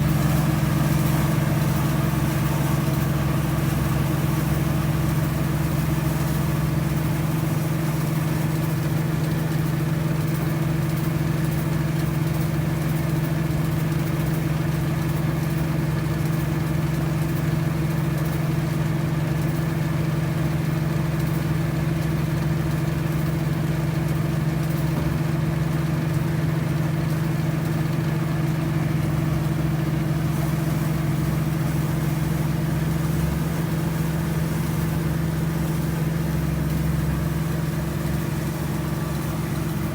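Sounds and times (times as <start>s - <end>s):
harvesting machine engine humming: 0.0s - 9.7s, 23.7s - 39.9s.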